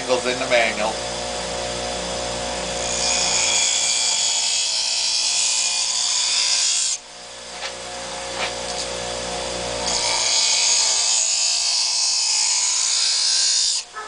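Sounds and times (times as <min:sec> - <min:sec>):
sharpening wheel motor hum: 0:00.0 - 0:14.0.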